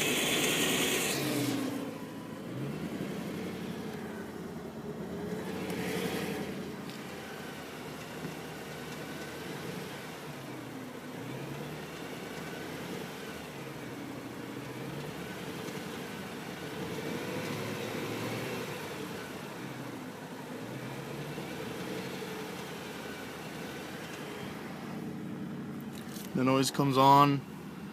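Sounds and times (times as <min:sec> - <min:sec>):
engine ticking: 0:00.0 - 0:20.5.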